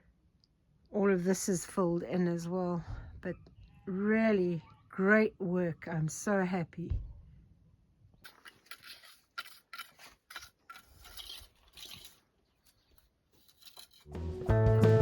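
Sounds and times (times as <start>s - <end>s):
strummed guitar music: 14.1s - 15.0s.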